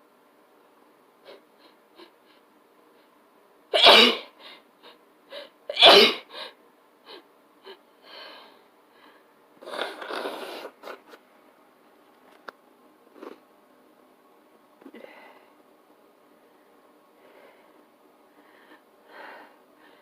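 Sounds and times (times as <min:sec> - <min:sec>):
soft noisy sound: 0:00.0 - 0:20.0
person sneezing: 0:03.7 - 0:04.4, 0:05.7 - 0:06.3.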